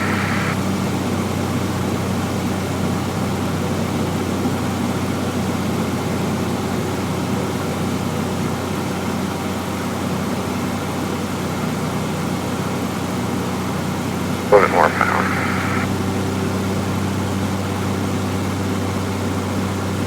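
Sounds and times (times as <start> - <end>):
airplane engine and propeller droning: 0.0 - 0.6.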